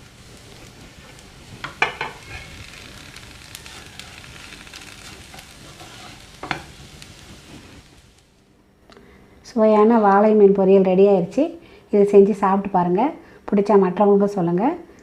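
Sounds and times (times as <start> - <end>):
fish and onion sizzling in oil: 0.0 - 8.4.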